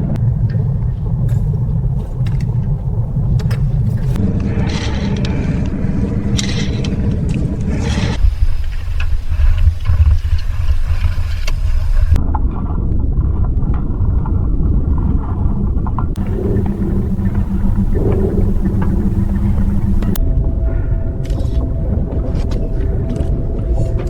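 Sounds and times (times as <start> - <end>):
low steady hum: 0.0 - 8.2, 16.2 - 24.0
deep rumble: 0.0 - 10.5, 12.0 - 24.0.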